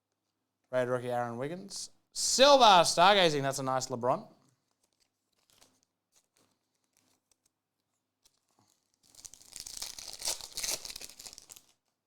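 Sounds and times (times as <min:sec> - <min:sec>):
foil wrapper tearing and crinkling: 0:04.6 - 0:07.6, 0:08.2 - 0:11.9.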